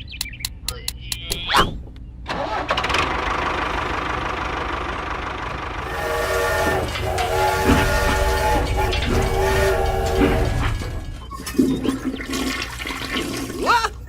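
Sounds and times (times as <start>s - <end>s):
steady mechanical rumble: 0.0s - 14.0s
chord horn blasts: 5.8s - 11.2s.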